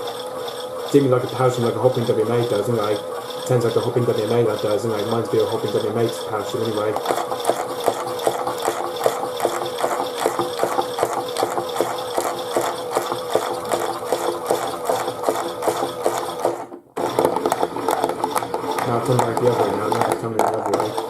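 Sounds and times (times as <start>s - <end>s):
toy motor hum: 0.0s - 21.0s
plastic drum clicking and rattling: 1.0s - 21.0s.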